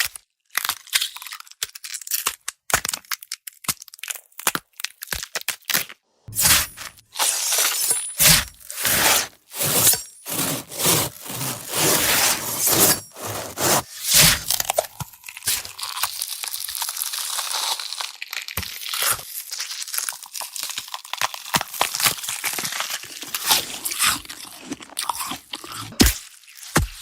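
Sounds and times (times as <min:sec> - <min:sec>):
gore crunching and cracking: 0:06.4 - 0:27.0.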